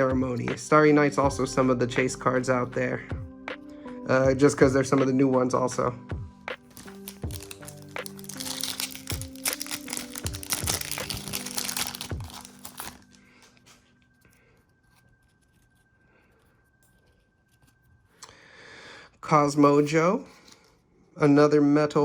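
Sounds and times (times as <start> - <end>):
background music: 0.0 - 22.0
foil wrapper crinkling and tearing: 6.6 - 14.2.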